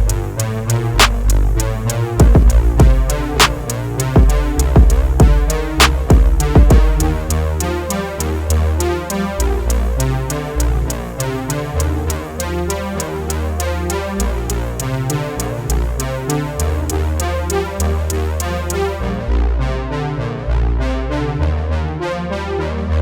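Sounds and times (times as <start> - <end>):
quick regular ticks: 0.0 - 7.4, 9.4 - 18.8
deep bass line: 0.0 - 22.0
synthesizer: 0.0 - 23.0.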